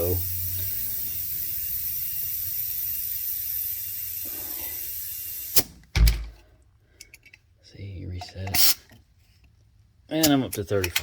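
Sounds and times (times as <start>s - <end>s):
compressed air hissing into tire: 0.0s - 5.8s
loud thump: 6.0s - 6.4s.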